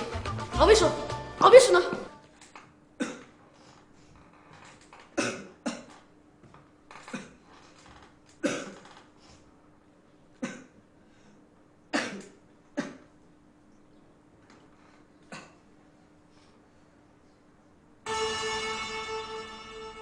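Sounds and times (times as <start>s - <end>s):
person coughing: 3.0s - 3.4s, 5.2s - 6.0s, 7.0s - 7.4s, 8.4s - 8.9s, 10.4s - 10.8s, 12.0s - 13.1s, 15.3s - 15.6s.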